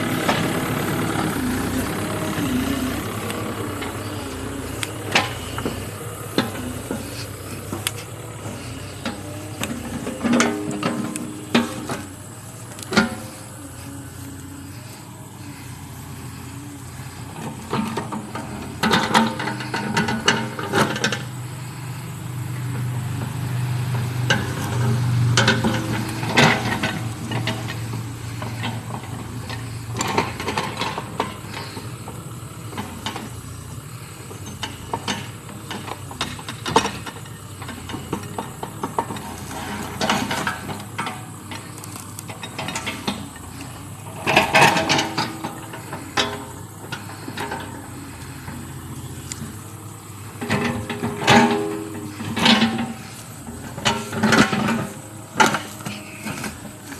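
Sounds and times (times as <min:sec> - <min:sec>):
bucket clanking and scraping: 0:00.0 - 0:13.5, 0:34.4 - 0:56.9
excavator diesel engine: 0:00.0 - 0:56.9.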